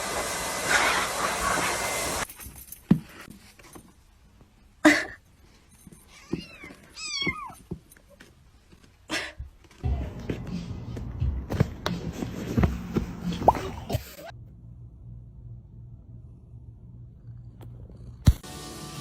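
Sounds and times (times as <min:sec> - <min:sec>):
cat meowing: 0:06.2 - 0:07.6.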